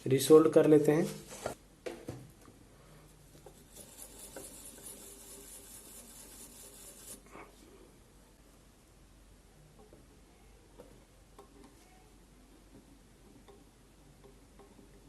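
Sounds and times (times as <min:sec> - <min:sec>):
faint scratchy rubbing: 0:03.5 - 0:07.2.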